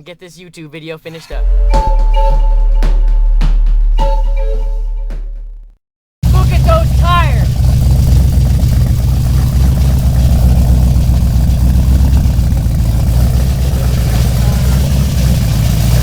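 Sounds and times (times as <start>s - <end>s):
car engine and road noise: 6.2s - 16.0s.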